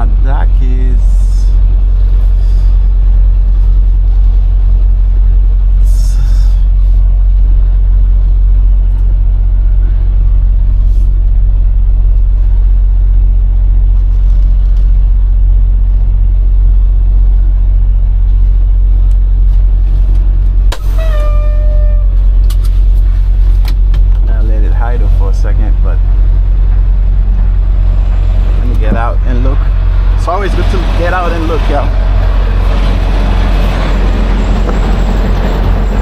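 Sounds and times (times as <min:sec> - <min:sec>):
diesel truck engine rumbling: 0:00.0 - 0:36.0.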